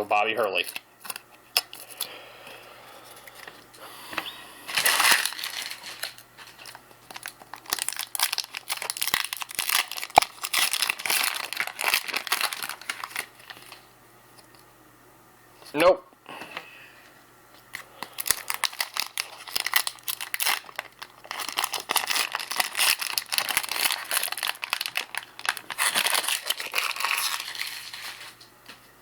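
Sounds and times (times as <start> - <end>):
plastic wrapper crinkling: 0.0 - 2.1, 4.7 - 14.6, 17.7 - 28.5.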